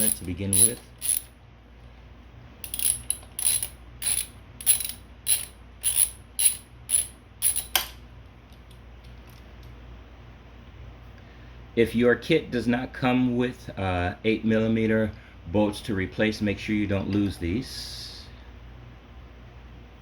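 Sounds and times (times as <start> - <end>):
ratchet wrench clicking: 0.0 - 1.3, 2.6 - 7.8.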